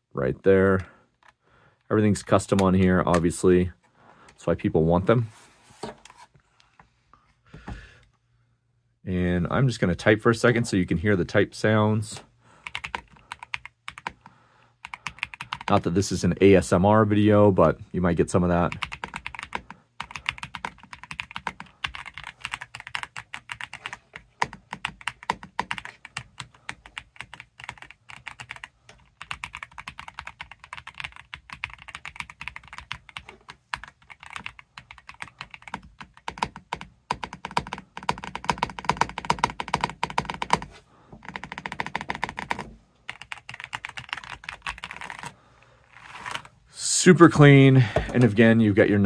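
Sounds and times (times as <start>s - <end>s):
mechanical keyboard typing: 12.6s - 15.8s, 18.7s - 45.3s.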